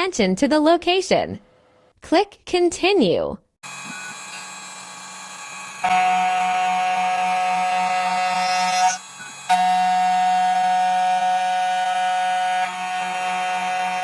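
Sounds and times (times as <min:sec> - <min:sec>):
cutting machine motor whine: 0:03.6 - 0:14.0.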